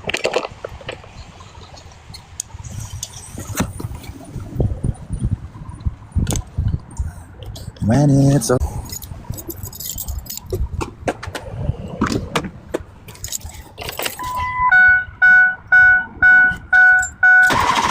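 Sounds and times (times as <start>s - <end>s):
keys jangling: 8.8s - 10.6s, 13.1s - 14.4s
car warning chime: 14.2s - 17.9s.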